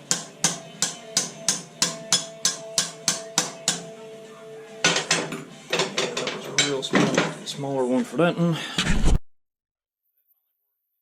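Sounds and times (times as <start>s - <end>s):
hammer striking steel: 0.0s - 4.0s, 4.8s - 7.4s.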